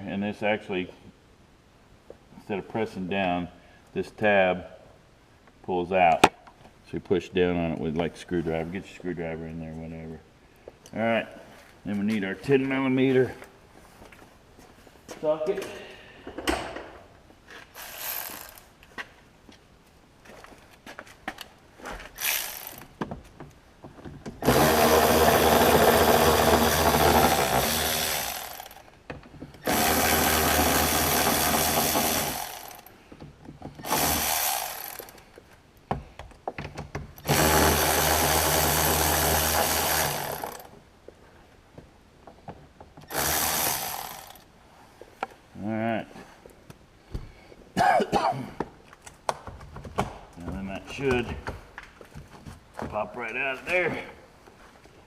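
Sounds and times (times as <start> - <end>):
power driver spinning: 17.8 - 18.6, 22.2 - 22.9, 24.4 - 28.9, 29.6 - 32.9, 33.8 - 35.2, 37.2 - 40.7, 43.0 - 44.4.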